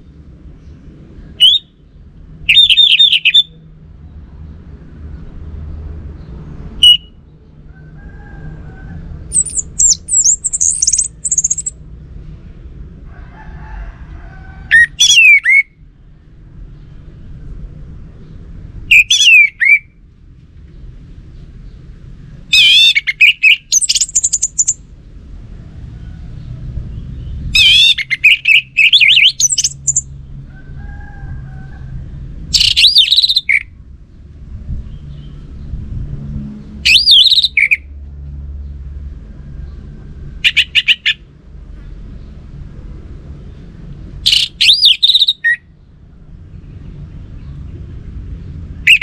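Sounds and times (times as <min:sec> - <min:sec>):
thrush singing warbles and trills: 0:00.0 - 0:03.7, 0:06.7 - 0:11.8, 0:14.6 - 0:20.1, 0:21.0 - 0:24.9, 0:26.5 - 0:31.4, 0:32.0 - 0:38.0, 0:39.6 - 0:41.6, 0:42.2 - 0:49.0.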